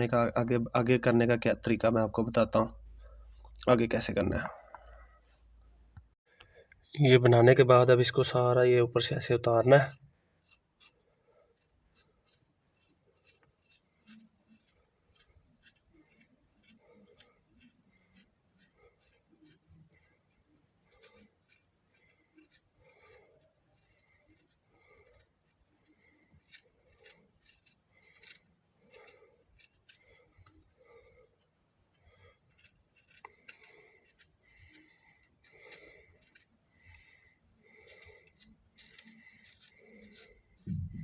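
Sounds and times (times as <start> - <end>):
scraping charred fruit skin: 9.4 - 41.0.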